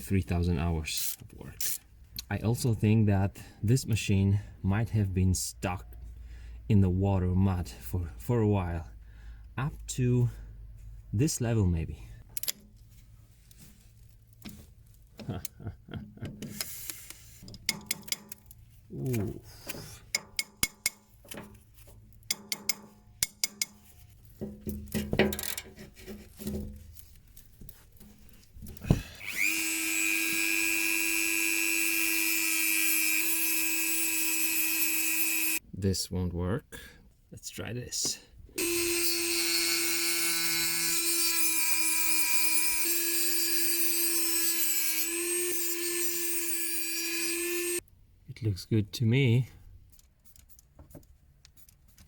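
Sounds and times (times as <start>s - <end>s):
tool scraping and rubbing: 0.9s - 1.9s, 16.4s - 24.6s, 25.3s - 35.6s
electric power tool running: 29.1s - 35.6s, 38.6s - 47.8s.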